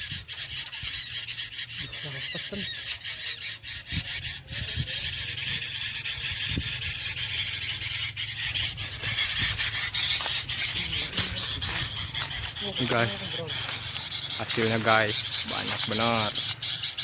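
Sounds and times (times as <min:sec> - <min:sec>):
small birds twittering: 0:00.0 - 0:17.0.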